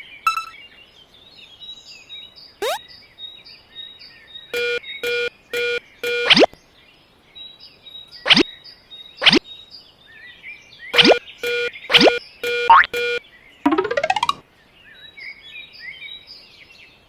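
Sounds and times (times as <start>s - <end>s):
short pitched beeps: 0.3s - 0.5s, 4.6s - 6.5s, 11.0s - 13.2s
cartoon falling whistle: 4.6s - 6.5s.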